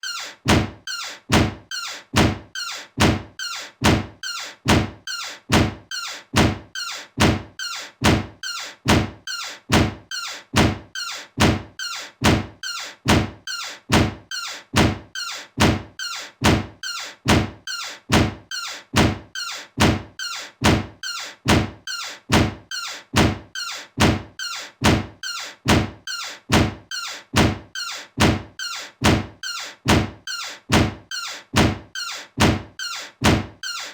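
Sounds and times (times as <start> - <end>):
door closing with a thunk: 0.4 - 0.7, 1.3 - 1.6, 2.2 - 2.4, 3.0 - 3.2, 3.8 - 4.1, 4.7 - 4.9, 5.5 - 5.8, 7.2 - 7.4, 8.0 - 8.3, 8.9 - 9.1, 9.7 - 10.0, 10.6 - 10.8, 11.4 - 11.6, 12.2 - 12.5, 13.9 - 14.2, 14.8 - 15.0, 15.6 - 15.8, 16.4 - 16.7, 17.3 - 17.5, 18.1 - 18.4, 19.0 - 19.2, 20.6 - 20.9, 21.5 - 21.7, 23.2 - 23.4, 27.4 - 27.6, 28.2 - 28.4, 30.7 - 31.0, 31.6 - 31.8, 32.4 - 32.6, 33.2 - 33.6.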